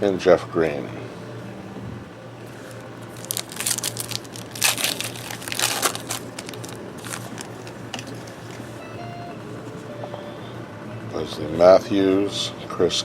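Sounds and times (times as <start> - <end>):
foil wrapper crinkling: 2.5 - 8.8.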